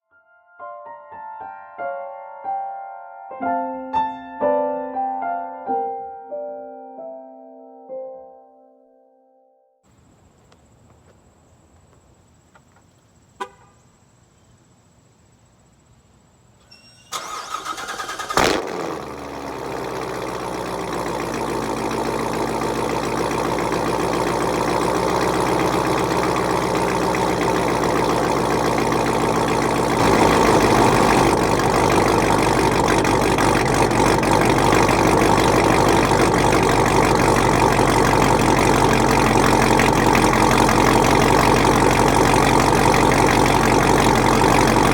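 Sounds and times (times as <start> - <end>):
short beep: 16.7 - 17.2
engine starter cranking: 16.7 - 44.9
car engine revving and idling: 17.5 - 44.9.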